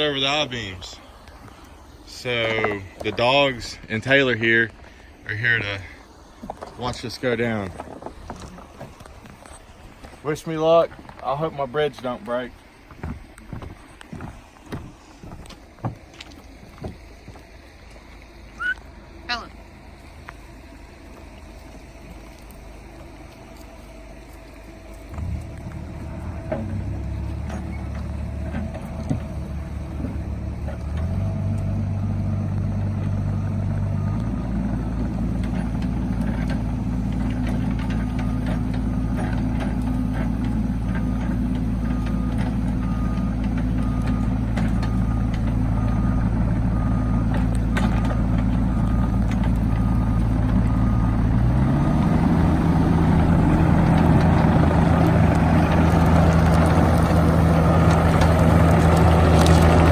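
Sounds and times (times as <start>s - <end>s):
excavator diesel engine under load: 0.0s - 59.9s
travel alarm beeping: 40.9s - 53.7s.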